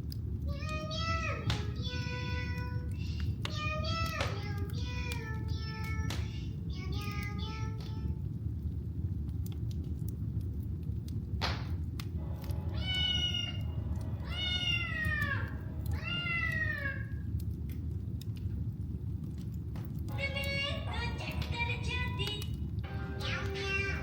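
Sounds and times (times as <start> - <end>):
low rumble: 0.0 - 24.0
wood fire crackling: 0.0 - 24.0
cat meowing: 12.4 - 17.3.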